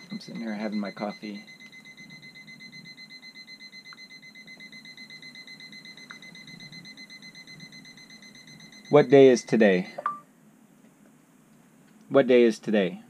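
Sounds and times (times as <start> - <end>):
fast high-pitched alarm beeps: 0.0 - 10.2.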